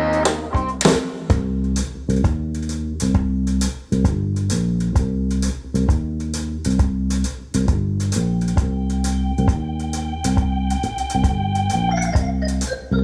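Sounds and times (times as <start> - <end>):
electric guitar: 0.0 - 0.9
bass line: 0.0 - 13.0
steady drum beat: 0.0 - 13.0.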